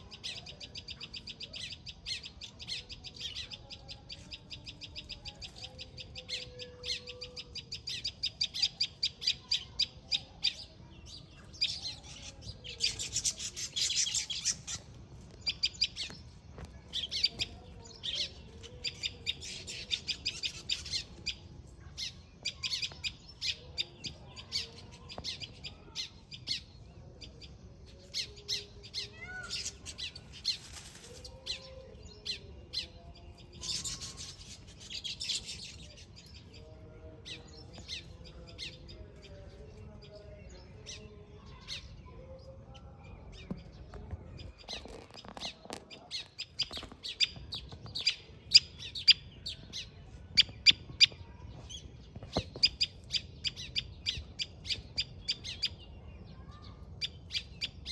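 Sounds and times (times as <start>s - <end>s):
birds chirping rapidly: 0.0s - 57.9s
harsh buzzy bird chatter: 7.6s - 31.7s, 32.3s - 36.6s.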